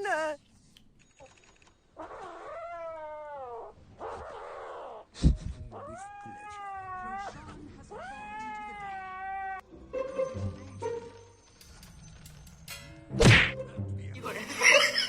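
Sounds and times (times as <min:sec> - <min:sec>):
cat yowling: 0:02.0 - 0:05.0, 0:05.8 - 0:09.6.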